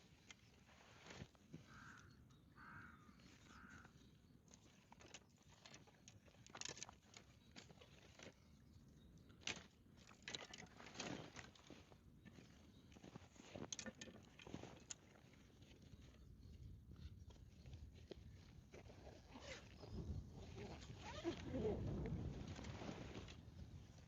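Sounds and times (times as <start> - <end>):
faint bird calling: 1.6 - 4.0
light clicks and rustles: 4.5 - 24.0.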